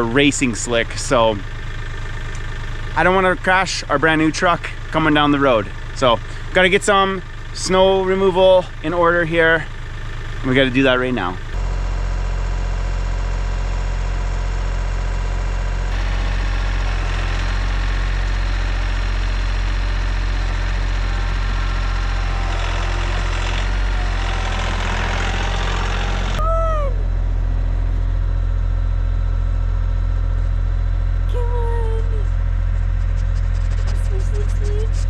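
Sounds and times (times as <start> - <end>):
tractor engine idling: 0.0 - 35.0.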